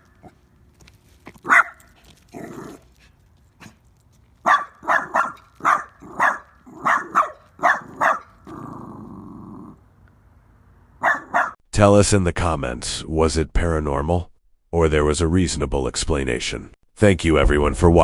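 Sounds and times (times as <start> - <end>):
dog barking: 1.4 - 1.8, 4.4 - 8.4, 11.0 - 11.6.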